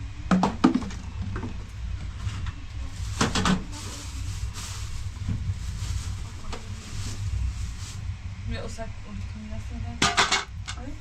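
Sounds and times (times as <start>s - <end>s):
objects knocking and clattering: 0.3s - 1.6s, 10.0s - 10.8s
low rumble: 1.0s - 11.0s.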